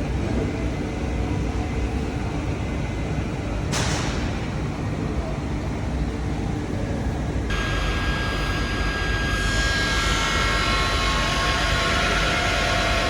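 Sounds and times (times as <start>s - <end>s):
steady whining tones: 7.5s - 13.0s.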